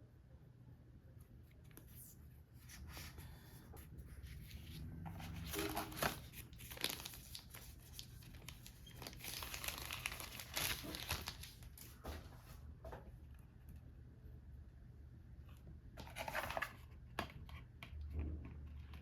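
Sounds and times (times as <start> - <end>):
packaging crinkling and rustling: 4.3 - 12.3.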